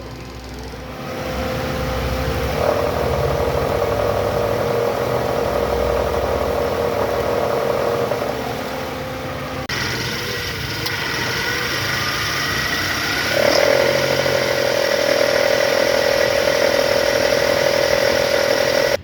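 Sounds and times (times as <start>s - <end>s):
car engine running: 0.2s - 19.0s
belt drive growl: 2.6s - 8.4s, 10.8s - 19.0s.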